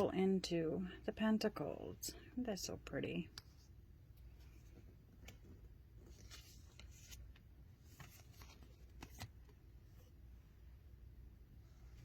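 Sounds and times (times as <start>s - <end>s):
low room hum: 0.0s - 12.0s
cards flipped and slid: 4.4s - 9.6s.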